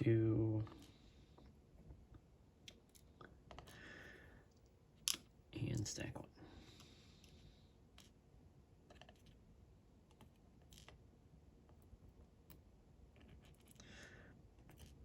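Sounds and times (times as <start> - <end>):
faint clicks of small lock parts: 4.5 - 5.9.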